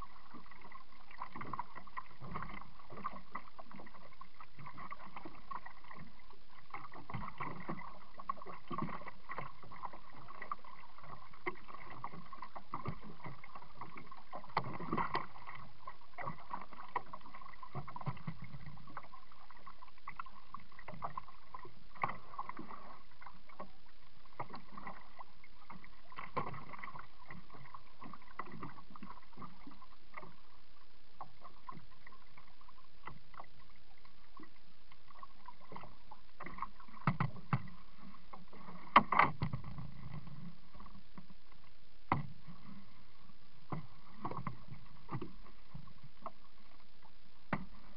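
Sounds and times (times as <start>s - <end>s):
water splashing against kayak hull: 0.0s - 47.9s.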